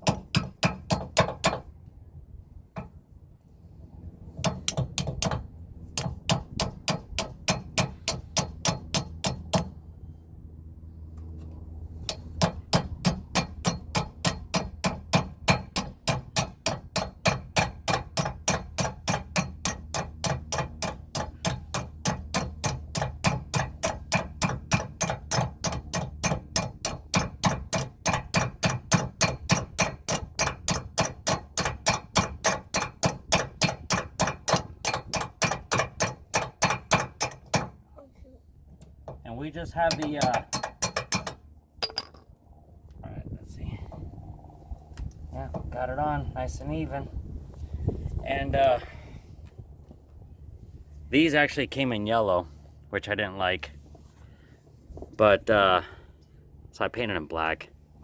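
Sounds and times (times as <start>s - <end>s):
hammer tapping on metal: 0.0s - 1.7s, 4.4s - 5.4s, 6.0s - 9.8s, 12.0s - 37.7s, 39.8s - 42.2s.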